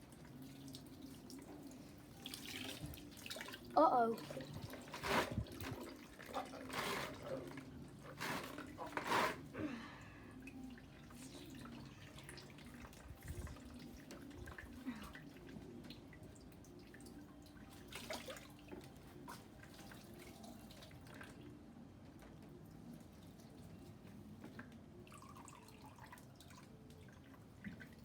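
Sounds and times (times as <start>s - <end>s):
water trickling and dripping: 0.0s - 6.6s, 10.2s - 28.0s
washing machine hum: 0.0s - 10.0s
small water splashes: 2.2s - 7.1s, 16.8s - 21.4s.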